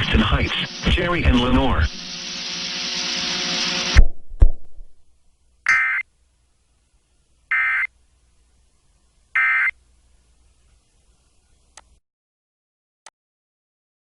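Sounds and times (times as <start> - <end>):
broadcast hiss: 0.0 - 4.0, 5.1 - 12.0
low hum: 0.0 - 11.9.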